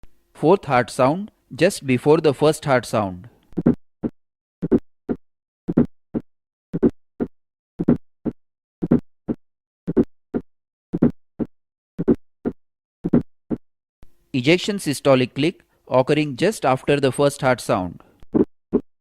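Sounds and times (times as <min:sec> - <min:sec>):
heartbeat with gallop: 0:03.6 - 0:06.2, 0:06.8 - 0:13.6.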